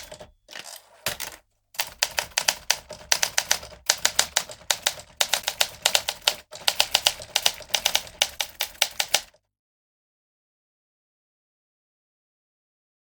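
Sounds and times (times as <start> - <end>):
typewriter keys striking: 0.0 - 9.4.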